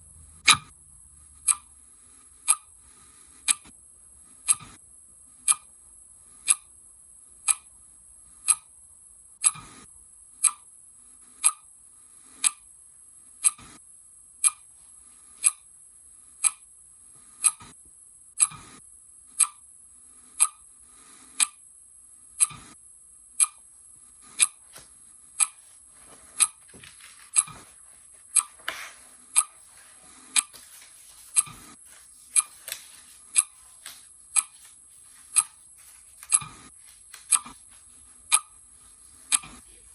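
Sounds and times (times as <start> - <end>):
clock ticking: 1.4 - 1.7, 2.4 - 2.8, 3.4 - 3.7, 4.4 - 4.8, 5.4 - 5.7, 6.4 - 6.7, 7.4 - 7.7, 8.4 - 8.7, 9.4 - 9.8, 10.4 - 10.7, 11.4 - 11.7, 12.3 - 12.7, 13.4 - 13.8, 14.4 - 14.7, 15.3 - 15.7, 16.4 - 16.7, 17.4 - 17.8, 18.4 - 18.8, 19.4 - 19.6, 20.3 - 20.7, 21.3 - 21.6, 22.4 - 22.8, 23.4 - 39.9
faint rustles and knocks: 24.2 - 39.9.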